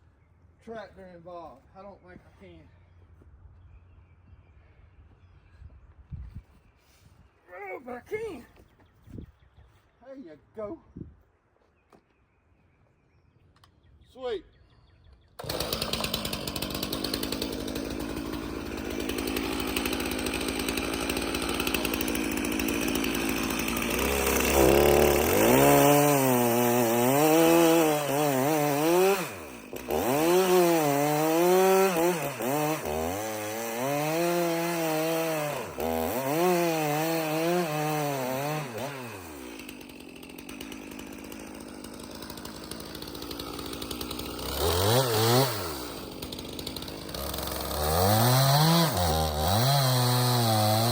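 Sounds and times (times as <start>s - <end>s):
chainsaw cutting wood: 15.4s - 50.9s.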